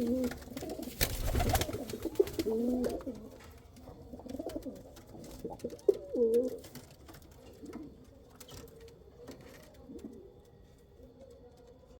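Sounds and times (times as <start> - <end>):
pigeons cooing: 0.0 - 3.3, 3.9 - 6.6.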